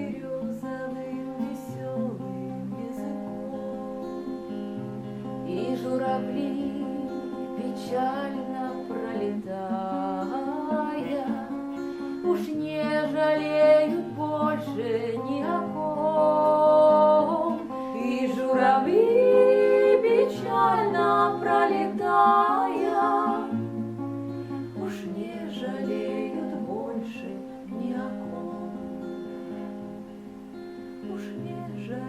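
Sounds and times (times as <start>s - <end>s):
acoustic guitar accompaniment: 0.0s - 32.0s
wordless melody line: 0.0s - 32.0s.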